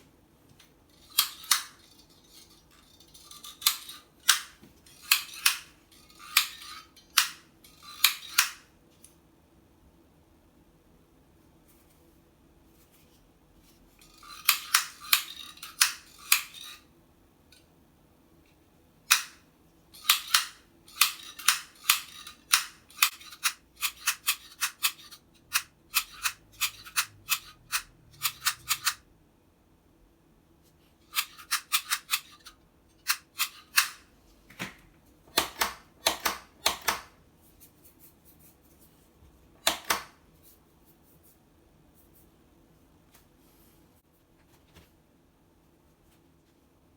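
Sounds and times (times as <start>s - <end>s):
clicks and taps of hand tools: 33.1s - 37.2s, 39.6s - 40.2s.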